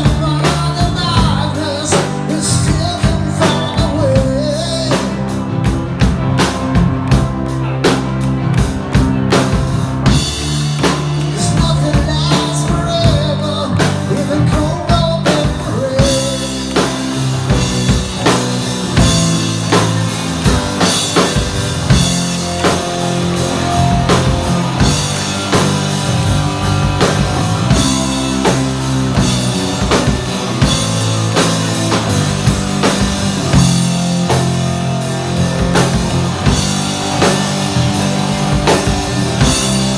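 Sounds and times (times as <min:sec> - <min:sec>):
person singing: 0:00.0 - 0:05.4, 0:11.0 - 0:17.6
rock music: 0:00.0 - 0:39.9.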